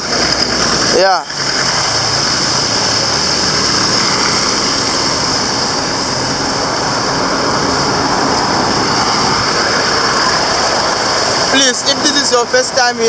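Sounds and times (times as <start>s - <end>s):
street traffic passing: 0.0s - 13.0s.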